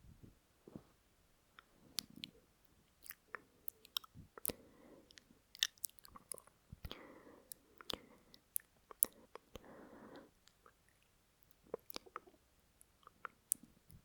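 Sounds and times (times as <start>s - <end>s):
wet mouth clicks and smacks: 3.0s - 9.6s, 11.4s - 13.7s
soft breaths: 3.2s - 5.5s, 6.1s - 11.1s.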